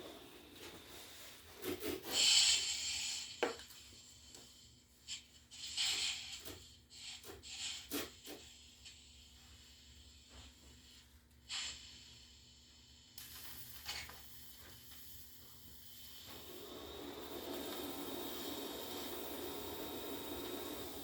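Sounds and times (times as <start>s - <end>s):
welding arc humming: 13.2s - 21.0s.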